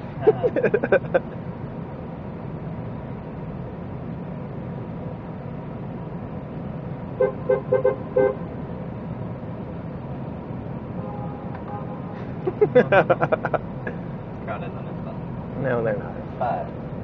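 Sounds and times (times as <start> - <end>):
low rumble of slow traffic: 0.0 - 17.0
car horn short toots: 11.0 - 12.1.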